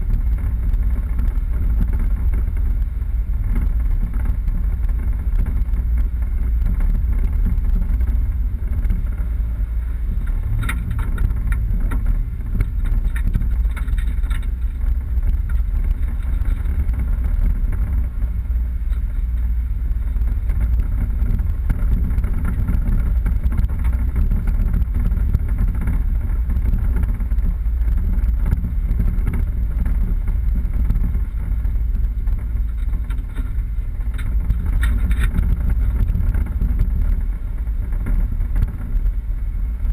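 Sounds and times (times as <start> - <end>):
vehicle engine rumble off-road: 0.0 - 39.9
knocks and rattles: 10.1 - 18.0.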